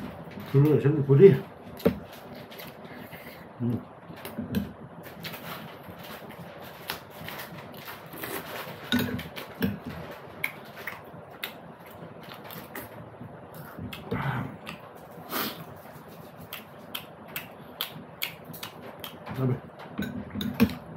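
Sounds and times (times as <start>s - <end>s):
person chewing: 13.5s - 19.2s.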